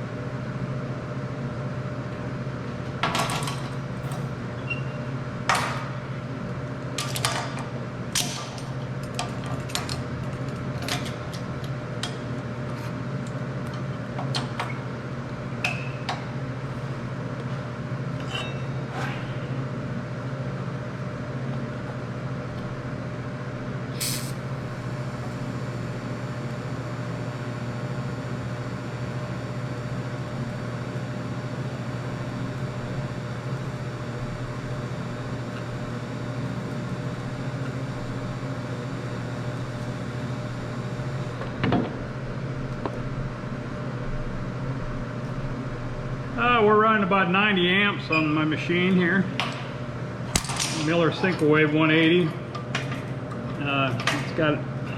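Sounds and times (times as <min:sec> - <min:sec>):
steady low hum: 0:00.0 - 0:54.9.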